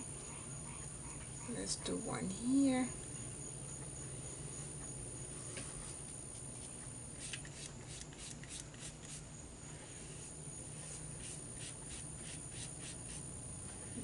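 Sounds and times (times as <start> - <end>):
steady low hum: 0.0 - 14.0
thin high whine: 0.0 - 14.0
scratchy brush strokes: 5.7 - 13.3
paintbrush brushing on paper: 5.8 - 9.2, 9.8 - 13.2.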